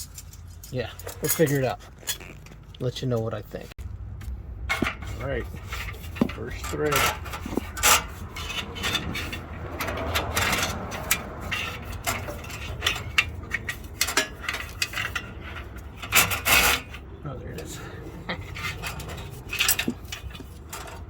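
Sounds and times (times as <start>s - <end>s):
steel cable scraping on metal: 4.7s - 21.0s.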